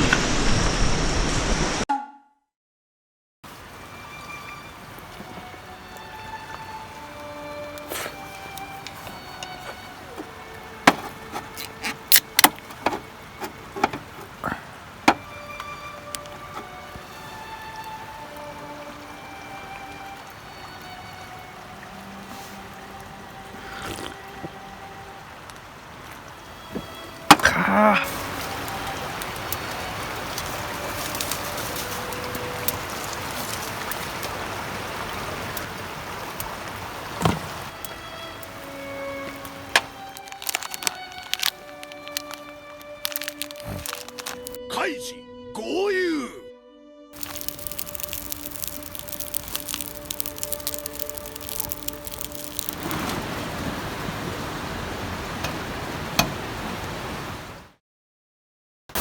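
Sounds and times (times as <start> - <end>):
river flowing: 3.5 - 44.6, 47.2 - 57.7
small crackles: 7.7 - 14.5, 28.0 - 34.4, 38.4 - 44.6, 47.2 - 53.2.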